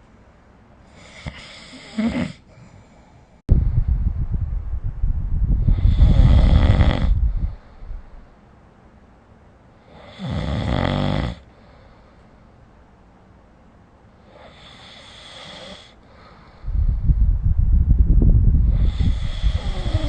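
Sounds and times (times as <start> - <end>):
person snoring: 0.9 - 2.9, 5.6 - 7.6, 9.9 - 11.5, 14.3 - 16.0, 18.6 - 20.0.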